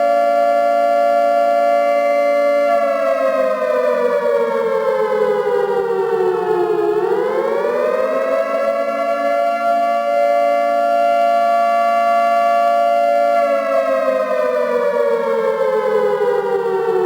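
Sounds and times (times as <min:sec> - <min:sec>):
civil defense siren: 0:00.0 - 0:17.0.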